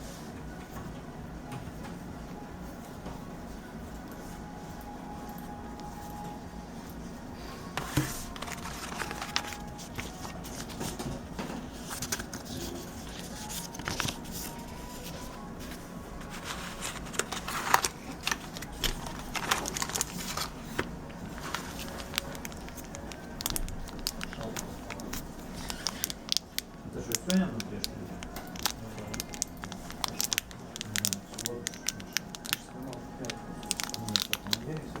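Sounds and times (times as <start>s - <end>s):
plastic and cardboard crinkling: 7.7s - 35.0s.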